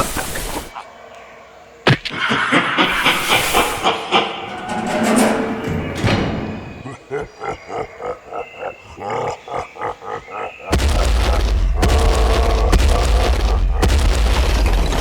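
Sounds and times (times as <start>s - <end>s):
deep crash and rumble: 10.7s - 15.0s.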